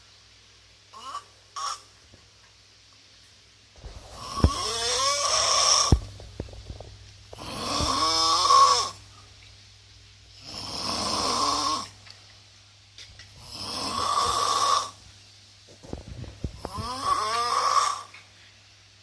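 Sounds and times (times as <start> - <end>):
person snoring loudly: 3.8 - 6.1, 7.4 - 9.0, 10.4 - 11.9, 13.4 - 15.0, 16.5 - 18.1.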